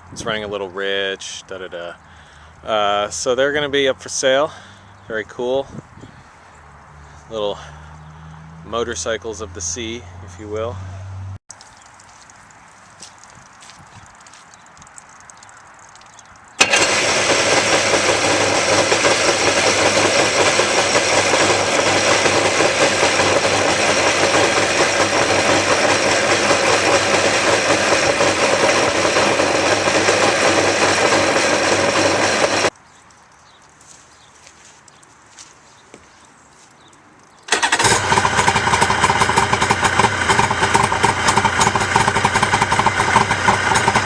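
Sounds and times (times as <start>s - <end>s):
jet ski engine running: 16.6s - 32.7s, 37.5s - 44.0s.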